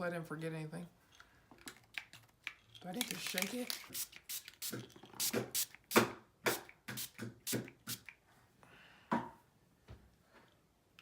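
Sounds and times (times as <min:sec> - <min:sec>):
spray bottle hissing: 0:03.0 - 0:08.1.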